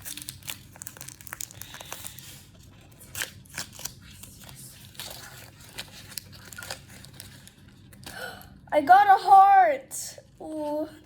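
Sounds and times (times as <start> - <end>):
plastic packaging crinkling and tearing: 0.0 - 8.1.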